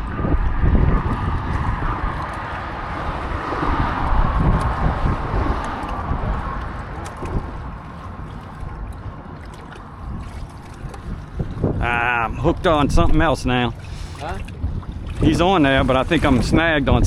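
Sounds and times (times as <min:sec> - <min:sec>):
boat motor running: 0:00.0 - 0:17.0
wind buffeting microphone: 0:00.0 - 0:17.0.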